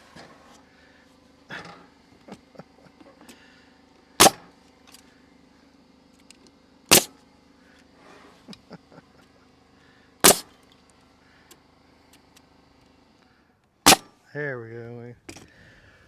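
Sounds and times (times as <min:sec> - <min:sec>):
faint steady hum: 0:00.0 - 0:16.0
pneumatic stapler firing into wood: 0:04.2 - 0:04.5, 0:06.9 - 0:07.2, 0:10.2 - 0:10.6, 0:13.9 - 0:14.1
handling clicks and knocks: 0:15.3 - 0:15.5.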